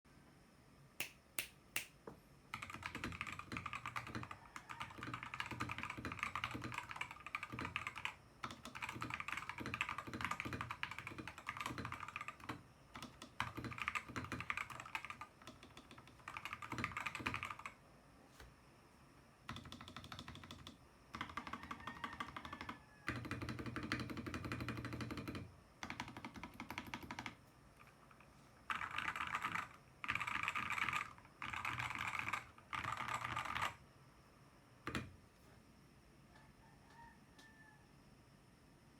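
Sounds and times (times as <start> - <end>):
typing on mechanical keyboard: 2.5 - 17.8, 19.5 - 33.8.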